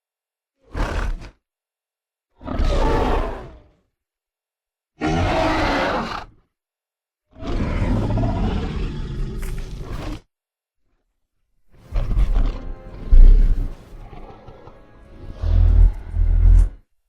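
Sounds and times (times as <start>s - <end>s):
creature roaring: 2.4s - 3.8s, 5.0s - 6.3s, 7.3s - 10.3s, 11.9s - 16.8s
deep low rumbling: 12.0s - 13.8s.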